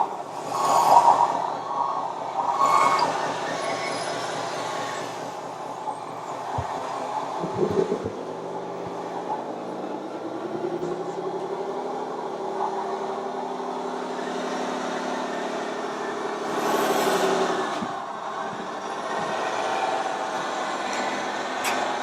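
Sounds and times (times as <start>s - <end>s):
steady pitched hum: 0.0s - 16.7s
model truck mechanical drone: 0.0s - 22.0s.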